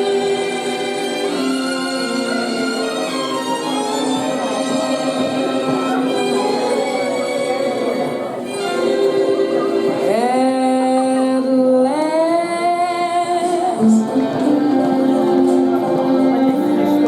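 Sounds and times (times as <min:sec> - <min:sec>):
sustained backing music: 0:00.0 - 0:17.0
woman singing slow song: 0:10.0 - 0:15.8.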